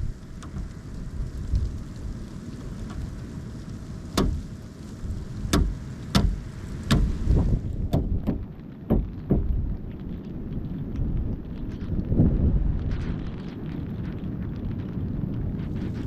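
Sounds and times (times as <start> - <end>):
wind rumble on microphone: 0.0 - 16.0
woodpecker knocking on wood: 4.2 - 4.4, 5.5 - 7.2, 7.9 - 9.6.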